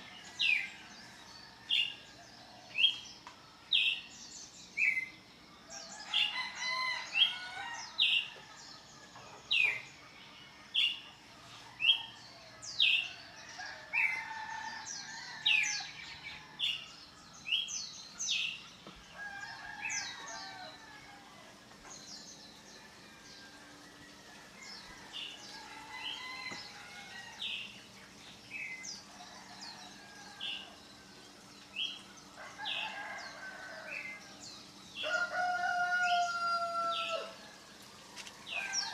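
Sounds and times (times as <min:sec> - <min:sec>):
songbirds chirping: 0:00.0 - 0:38.9
rooster crowing: 0:05.9 - 0:08.2, 0:19.2 - 0:21.6, 0:24.4 - 0:27.6, 0:32.3 - 0:37.5.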